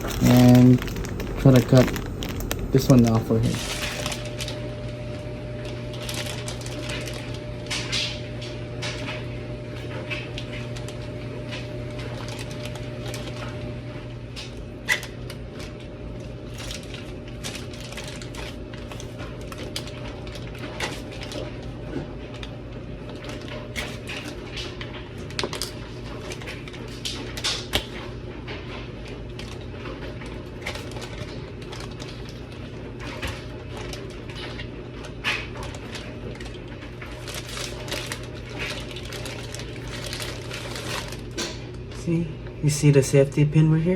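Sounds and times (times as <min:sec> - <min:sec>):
steady low hum: 0:00.0 - 0:24.6.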